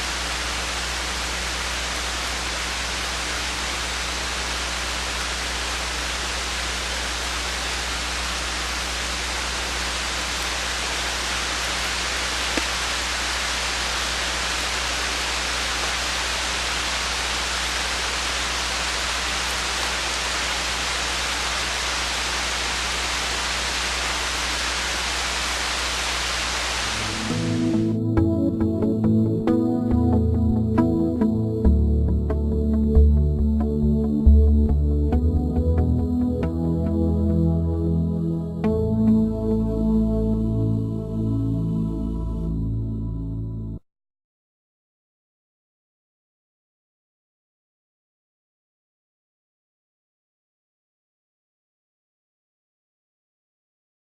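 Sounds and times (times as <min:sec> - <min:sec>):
rain hissing: 0:00.0 - 0:27.9
low hum: 0:00.0 - 0:43.8.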